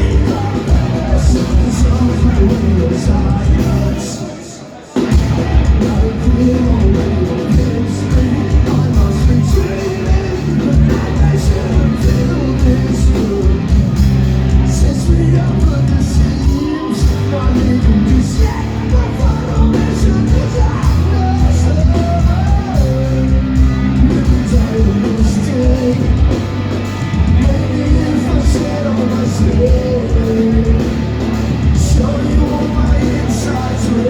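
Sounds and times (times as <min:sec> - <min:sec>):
person singing: 0:00.0 - 0:26.4, 0:27.2 - 0:34.0
drums: 0:00.0 - 0:34.0
live rock band: 0:00.0 - 0:34.0.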